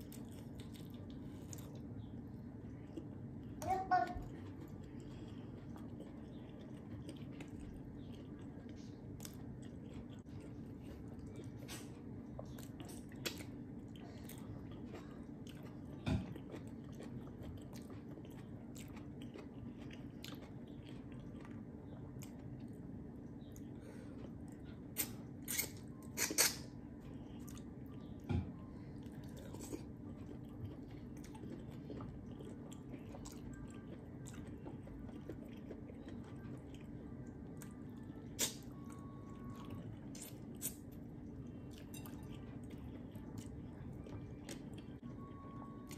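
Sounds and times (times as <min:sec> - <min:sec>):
low steady hum: 0:00.0 - 0:45.9
person chewing and biting: 0:14.2 - 0:22.5, 0:24.2 - 0:26.7, 0:29.2 - 0:36.8, 0:37.6 - 0:41.1.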